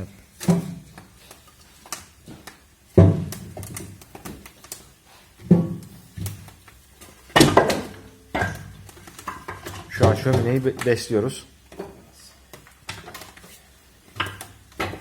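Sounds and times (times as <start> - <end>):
firewood knocking in firebox: 0.4 - 1.0, 2.2 - 4.5, 5.4 - 6.5, 7.3 - 10.9.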